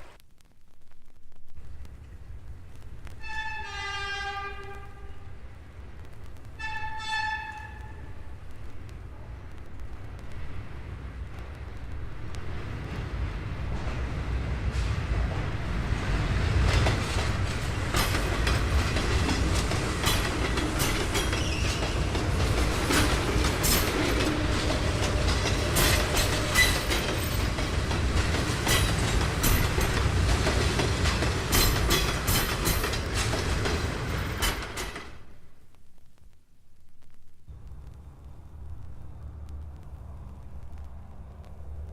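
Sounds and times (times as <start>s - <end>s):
vehicle low rumble: 37.0s - 41.9s.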